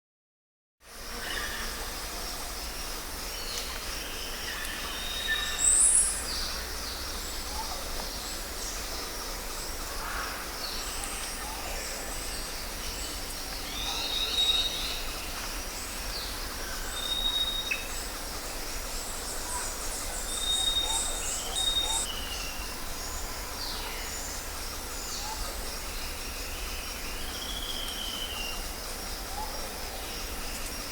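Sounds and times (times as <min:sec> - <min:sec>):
birds calling and whistling: 0:19.1 - 0:24.4.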